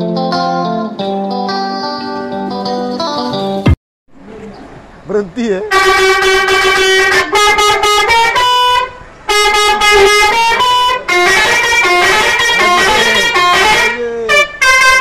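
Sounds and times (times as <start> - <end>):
musical bus horn playing a tune: 5.7 - 15.0.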